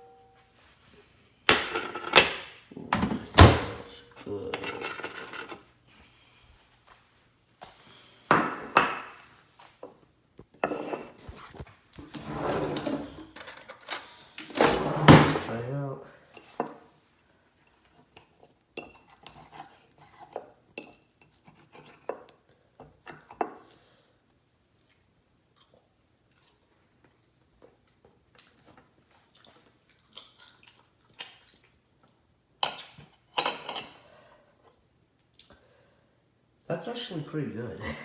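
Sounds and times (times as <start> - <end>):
cutlery scraping on plate: 4.5 - 5.6, 10.6 - 11.4, 21.2 - 22.2.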